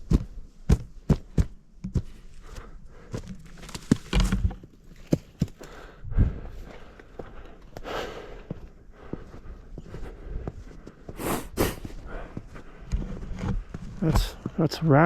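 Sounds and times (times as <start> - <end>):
footsteps crunching through snow: 7.9 - 15.0.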